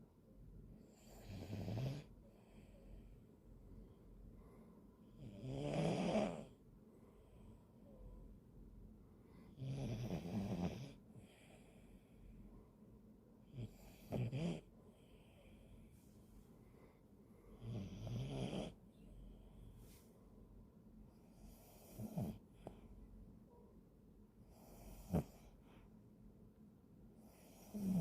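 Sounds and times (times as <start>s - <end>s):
dog snoring: 0.8s - 2.7s, 5.1s - 6.6s, 9.5s - 11.8s, 13.4s - 15.6s, 17.6s - 18.8s, 21.2s - 22.8s, 24.5s - 25.6s, 27.2s - 28.0s
faint breathing: 2.0s - 5.2s, 6.6s - 8.1s, 9.0s - 9.6s, 10.9s - 13.0s, 13.7s - 17.8s, 18.7s - 20.6s, 24.4s - 26.1s.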